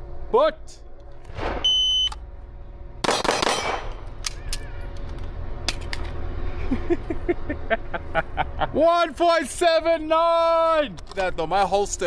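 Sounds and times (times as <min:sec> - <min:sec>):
pistol shots: 0:03.0 - 0:04.0.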